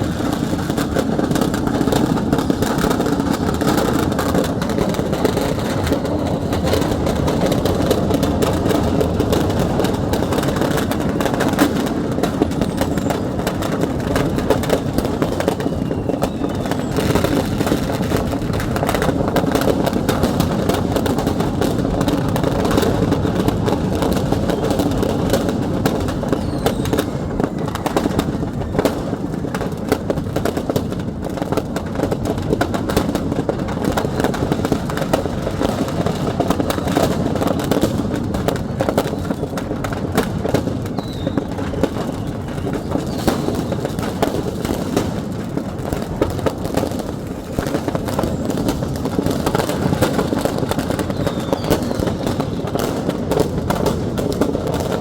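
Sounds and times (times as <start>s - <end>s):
firecrackers crackling: 0.0s - 55.0s.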